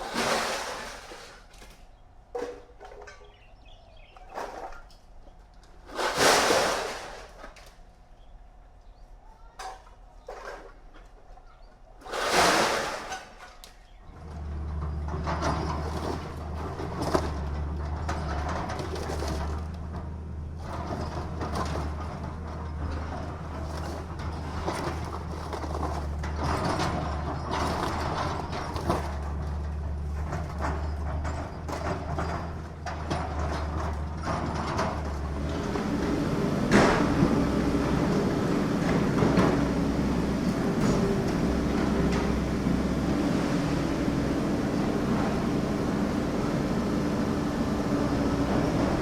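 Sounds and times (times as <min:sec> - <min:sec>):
machinery low hum: 0:14.0 - 0:49.0.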